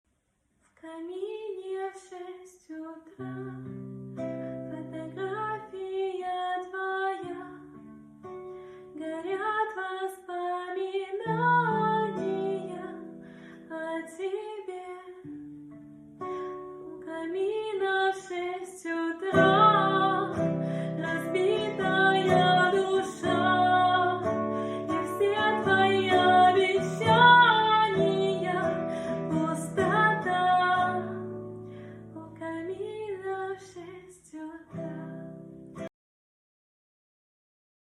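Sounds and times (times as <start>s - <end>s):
woman singing: 0.8s - 3.8s, 4.6s - 7.8s, 8.9s - 15.4s, 16.8s - 31.4s, 32.0s - 35.4s
guitar chords: 19.2s - 32.3s, 34.7s - 35.9s.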